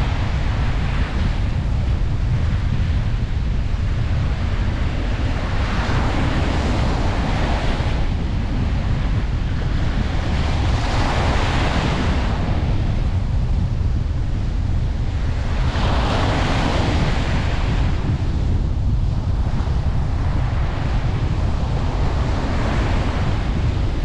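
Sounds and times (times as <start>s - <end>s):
waves breaking on beach: 0.0s - 18.5s
wind rumble on microphone: 0.0s - 24.0s.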